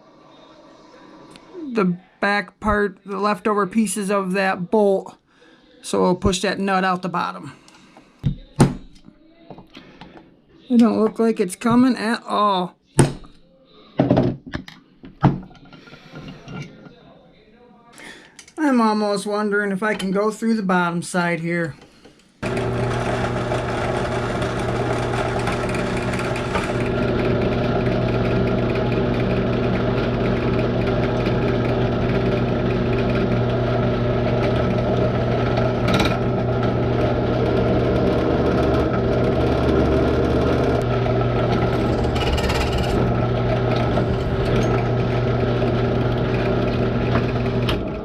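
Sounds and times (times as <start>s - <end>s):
electric drill drilling: 22.4s - 48.0s.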